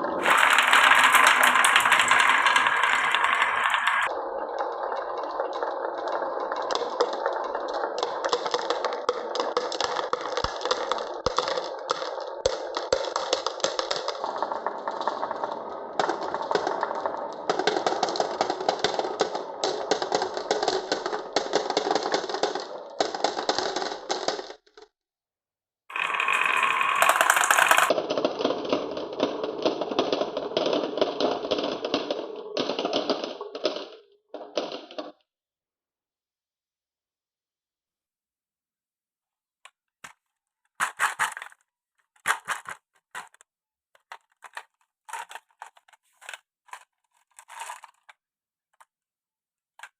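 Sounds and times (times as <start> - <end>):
marbles rattling down wooden run: 0.0 - 24.9, 25.9 - 35.2, 44.0 - 48.1.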